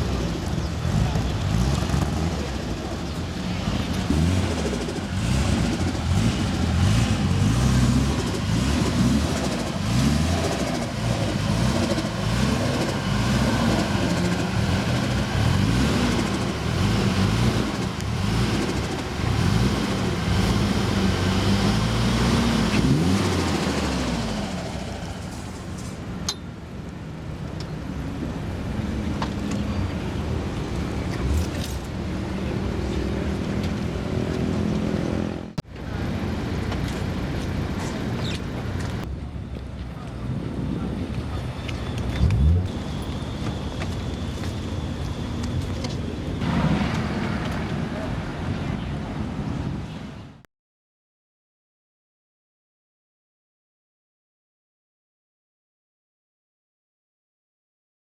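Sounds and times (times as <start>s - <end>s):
car engine revving at low revs: 0.0s - 25.6s, 40.2s - 43.6s.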